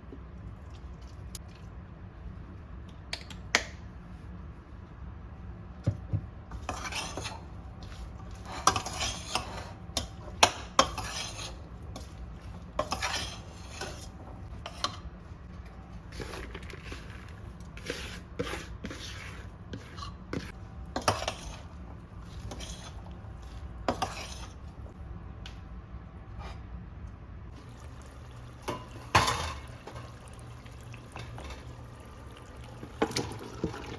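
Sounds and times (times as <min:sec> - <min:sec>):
utensils scraping: 0:08.4 - 0:12.2, 0:12.8 - 0:15.0, 0:16.1 - 0:24.7.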